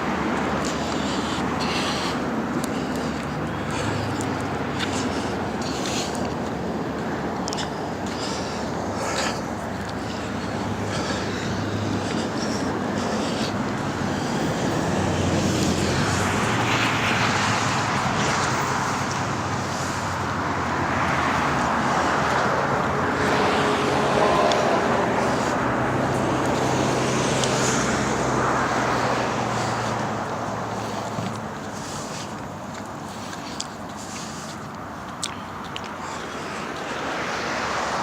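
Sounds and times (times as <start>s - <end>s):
steady traffic hum: 0.0s - 38.0s
vehicles passing: 0.0s - 38.0s.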